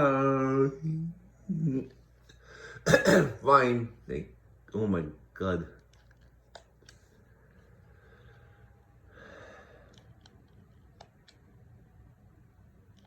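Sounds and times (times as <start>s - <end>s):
soft breath: 7.3s - 10.3s.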